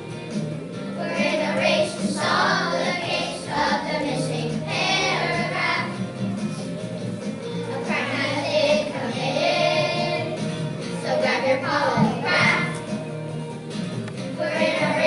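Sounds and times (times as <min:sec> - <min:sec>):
recorded musical accompaniment: 0:00.0 - 0:15.0
children singing: 0:01.0 - 0:06.0, 0:07.7 - 0:12.9, 0:14.4 - 0:15.0.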